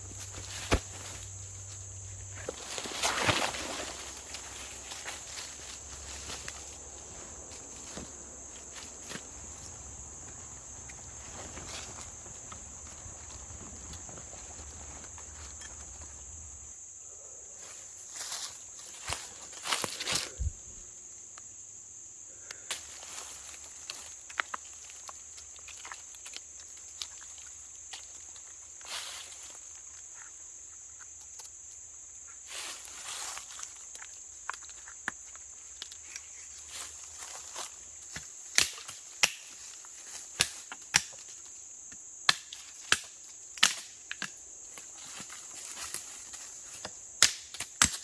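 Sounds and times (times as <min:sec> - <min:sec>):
soft rustling: 0:00.0 - 0:16.7
insect chorus: 0:00.0 - 0:48.0
sharp cracks and snaps: 0:38.1 - 0:41.5, 0:42.2 - 0:48.0.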